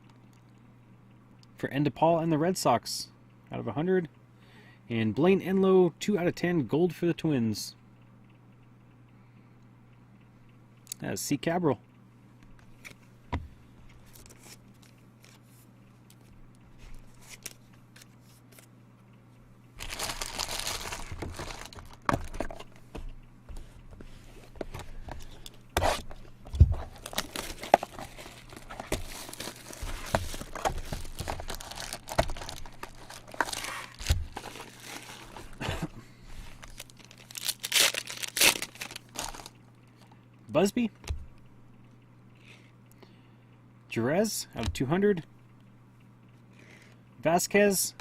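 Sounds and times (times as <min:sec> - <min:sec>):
plastic wrapping tearing and crinkling: 0:19.8 - 0:22.7, 0:25.8 - 0:35.8, 0:36.5 - 0:39.6.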